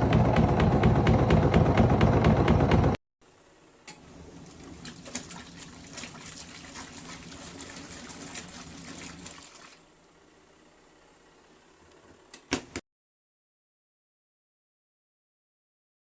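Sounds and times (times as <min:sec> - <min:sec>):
water splashing in washing machine: 0:03.9 - 0:10.1.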